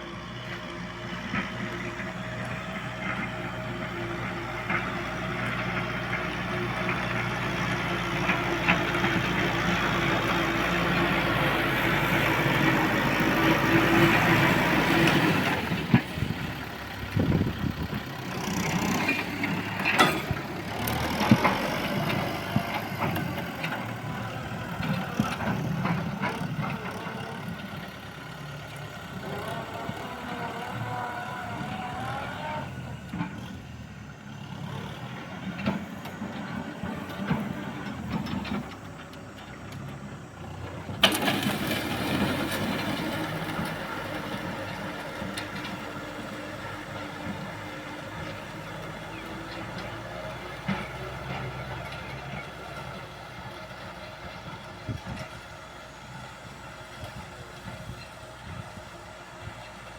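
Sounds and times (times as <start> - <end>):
tractor diesel engine running: 0.0 - 59.9
sharp knocks and clanks: 19.8 - 21.6.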